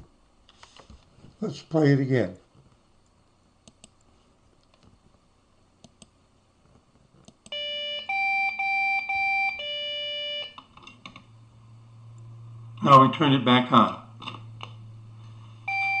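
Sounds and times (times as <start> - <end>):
faint clicks: 3.0 - 4.9, 5.8 - 6.2
computer electronic beeps: 15.7 - 16.0.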